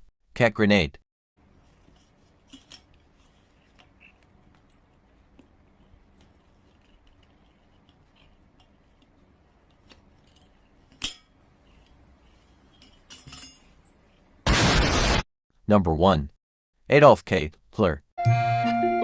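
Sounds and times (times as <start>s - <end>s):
sharp crack: 14.5s - 15.2s.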